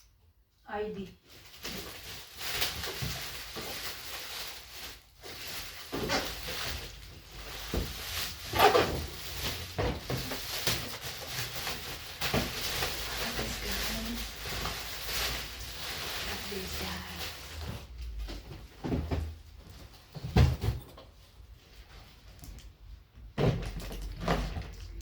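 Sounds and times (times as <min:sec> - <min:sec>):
packaging rustling: 0:01.2 - 0:18.4.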